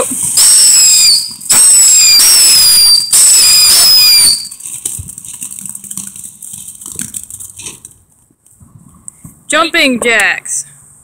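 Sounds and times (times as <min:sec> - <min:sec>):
firework shrill whistles: 0:00.0 - 0:04.6
faint crackles and pops: 0:00.0 - 0:09.4.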